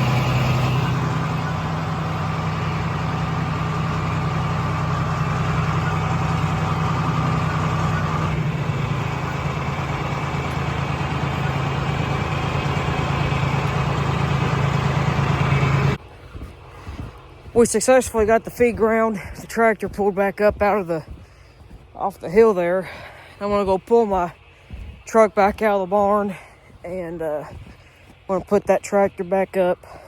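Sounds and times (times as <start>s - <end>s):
tractor engine running: 0.0s - 30.0s.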